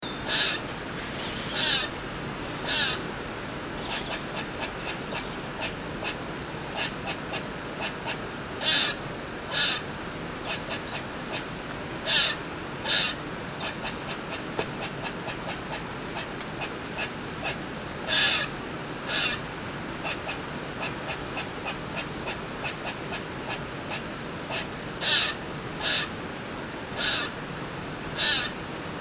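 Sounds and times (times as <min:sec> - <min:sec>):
squirrel chirping: 0:00.0 - 0:00.7, 0:02.6 - 0:03.2, 0:03.8 - 0:09.8, 0:10.4 - 0:11.4, 0:12.0 - 0:18.5, 0:20.0 - 0:26.1
harsh squirrel squeals: 0:00.2 - 0:00.7, 0:01.3 - 0:01.9, 0:02.6 - 0:03.1, 0:03.8 - 0:11.4, 0:12.0 - 0:18.5, 0:19.1 - 0:19.4, 0:20.0 - 0:26.1, 0:27.0 - 0:27.4, 0:28.2 - 0:28.6.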